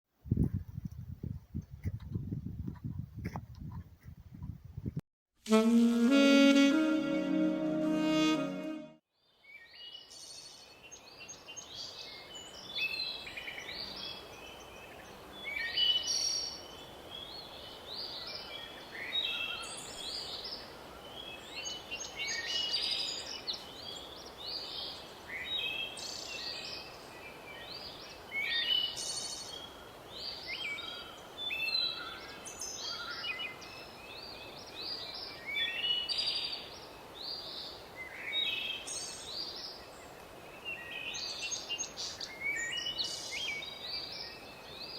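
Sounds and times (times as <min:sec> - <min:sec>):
faint background hiss: 0:10.0 - 0:44.9.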